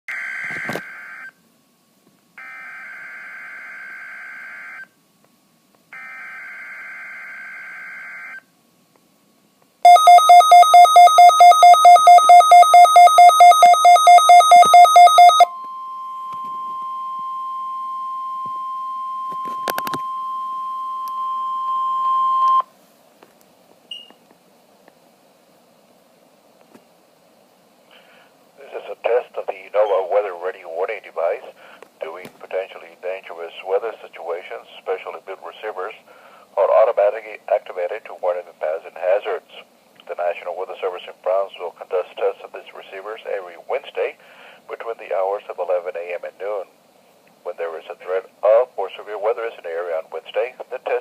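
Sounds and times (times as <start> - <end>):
steady warning tone: 9.8 - 22.6.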